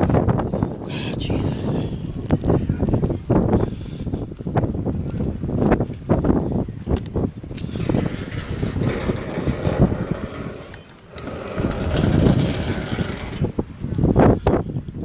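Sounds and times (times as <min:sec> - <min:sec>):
wind noise: 0:00.0 - 0:15.0
vehicle noise: 0:07.6 - 0:13.7.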